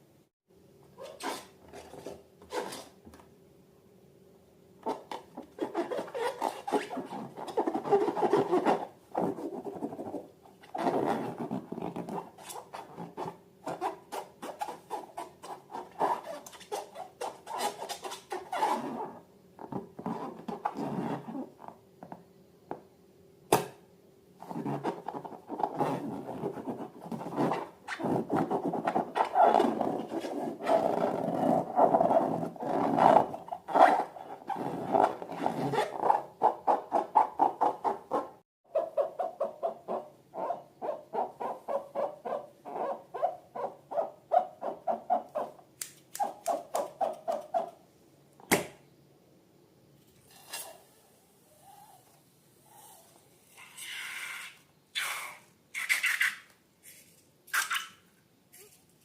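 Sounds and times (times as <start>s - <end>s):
rubber balloons squeaking: 1.0s - 3.0s, 4.8s - 21.7s, 24.4s - 45.6s
balloon sharp snap: 48.5s - 48.8s.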